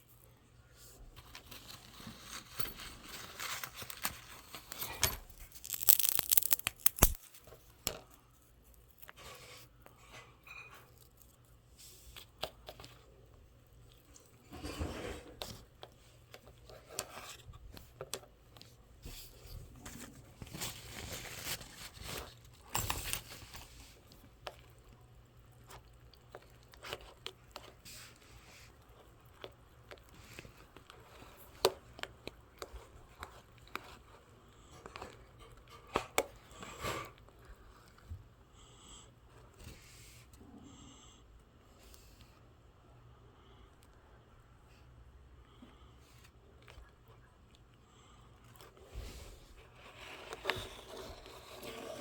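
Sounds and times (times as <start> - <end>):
rustling and crinkling: 0.0 - 38.3.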